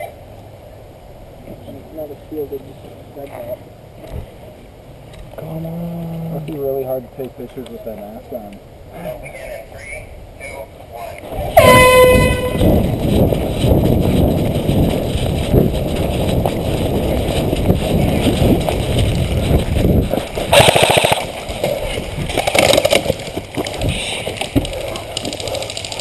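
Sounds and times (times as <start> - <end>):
wind and movement on microphone: 2.5 - 26.0
airsoft gun full-auto bursts: 20.5 - 21.4.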